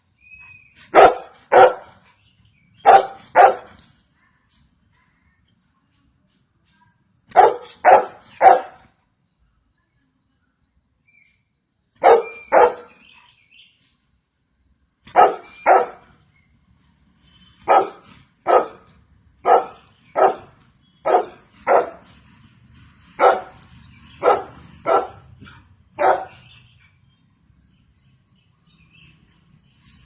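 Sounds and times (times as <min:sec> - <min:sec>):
dog barking: 0:00.9 - 0:02.0, 0:02.8 - 0:03.8, 0:07.3 - 0:08.9, 0:12.0 - 0:13.1, 0:15.1 - 0:16.1, 0:17.6 - 0:22.0, 0:23.2 - 0:23.6, 0:24.2 - 0:26.6.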